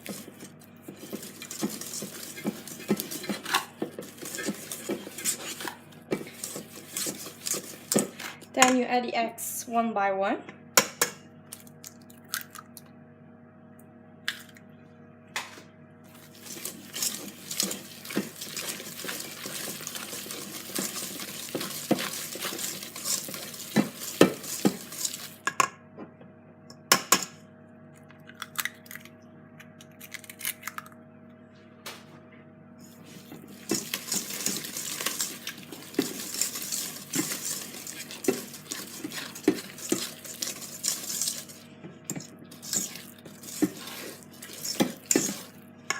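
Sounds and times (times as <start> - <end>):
utensil scraping a bowl: 0.0 - 8.4, 16.1 - 25.4, 33.0 - 45.6.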